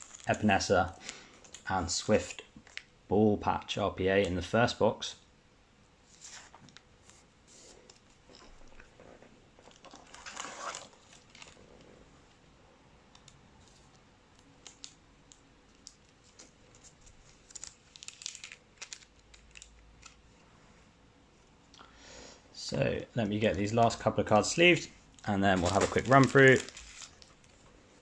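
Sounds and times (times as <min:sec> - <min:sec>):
trading cards and plastic rustling: 0:00.0 - 0:02.9, 0:06.1 - 0:11.9, 0:13.2 - 0:20.4, 0:23.2 - 0:27.7.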